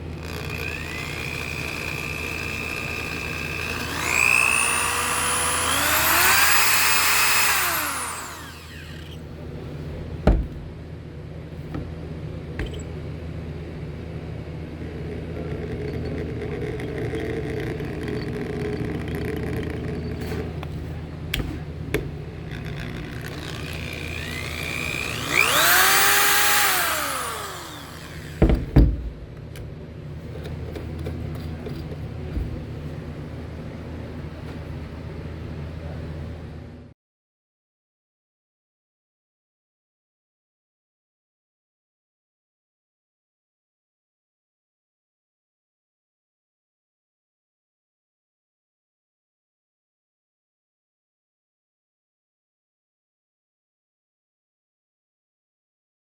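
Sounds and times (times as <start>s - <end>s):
drill motor whining: 0.0s - 9.3s, 14.8s - 20.7s, 22.4s - 28.9s
knocks: 10.2s - 10.7s, 28.4s - 29.2s.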